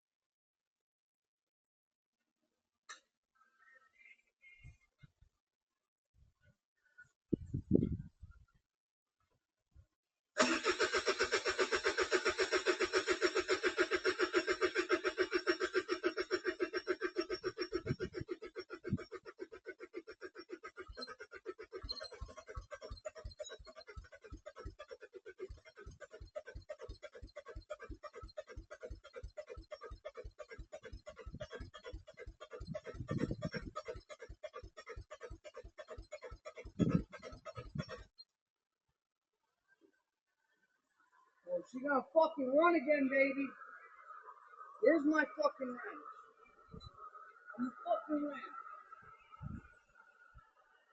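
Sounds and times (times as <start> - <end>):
diesel engine cranking: 10.4 - 11.8
starter motor cranking engine: 10.4 - 13.8.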